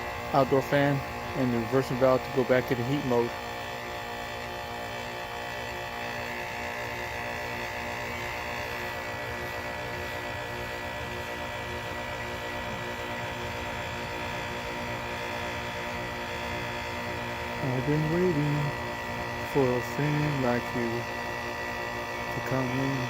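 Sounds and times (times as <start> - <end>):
heat pump compressor humming: 0.0 - 23.0.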